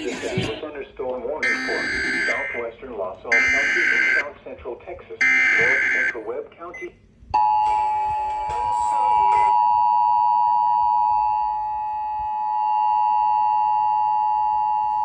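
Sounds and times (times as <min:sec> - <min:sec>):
emergency alert tone: 0:01.4 - 0:02.7, 0:03.3 - 0:04.3, 0:05.2 - 0:06.2.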